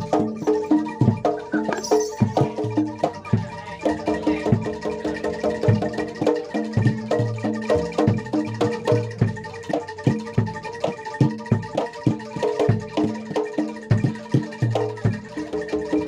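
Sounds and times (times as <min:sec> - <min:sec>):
struck metal keyed instruments: 0:00.0 - 0:16.0.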